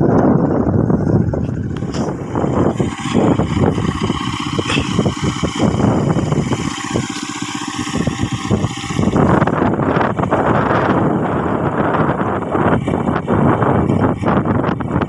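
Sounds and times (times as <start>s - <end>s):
small engine chugging: 0.0s - 15.0s.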